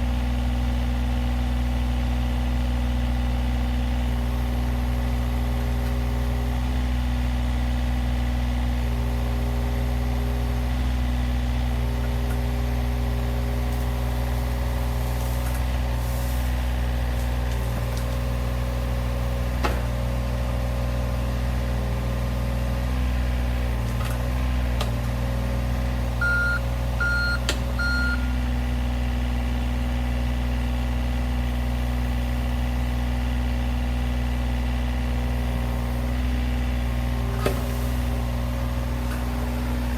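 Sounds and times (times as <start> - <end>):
excavator diesel engine: 0.0 - 39.9
hydraulic whining: 26.2 - 28.3
short beeps: 26.2 - 28.4.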